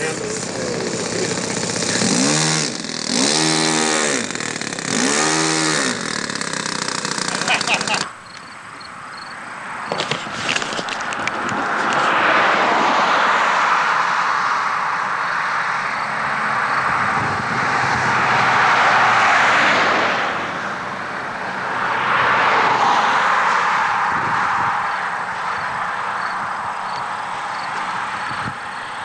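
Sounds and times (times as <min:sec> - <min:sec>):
model airplane engine in flight: 0:00.0 - 0:08.2, 0:13.8 - 0:19.2, 0:23.3 - 0:29.0.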